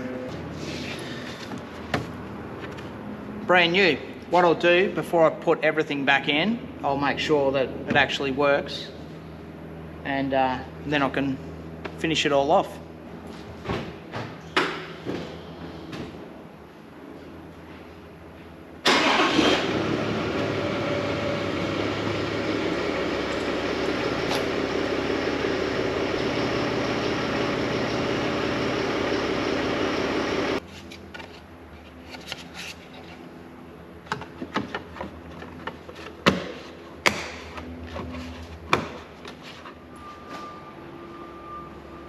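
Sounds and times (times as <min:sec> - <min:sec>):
vehicle engine running: 0:16.7 - 0:32.2, 0:33.3 - 0:42.0.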